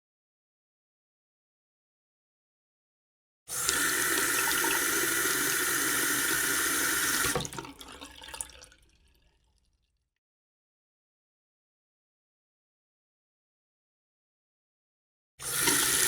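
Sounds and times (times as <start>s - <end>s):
faucet running into sink: 3.5s - 9.2s, 15.4s - 16.0s
water dribbles and drips: 6.6s - 9.9s.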